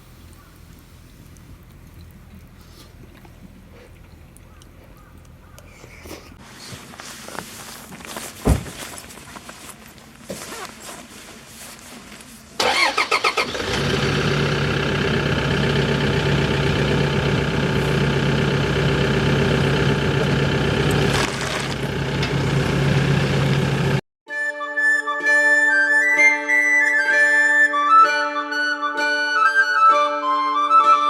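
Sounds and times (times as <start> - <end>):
car engine cranking and idling: 0.0 - 6.4, 11.4 - 24.0
sharp thump: 8.4 - 8.8.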